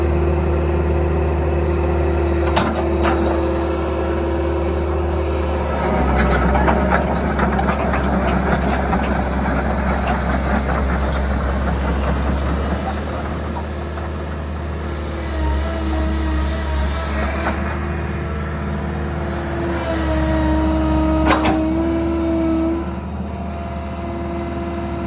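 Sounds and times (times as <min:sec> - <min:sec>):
excavator diesel engine humming: 0:00.0 - 0:25.0
rattling and clatter: 0:02.4 - 0:03.7, 0:05.4 - 0:14.4.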